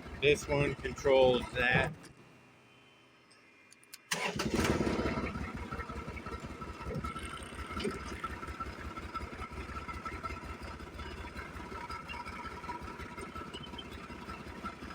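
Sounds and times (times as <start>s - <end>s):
engine starting and running: 0.0s - 14.9s
steady whine: 0.2s - 4.2s.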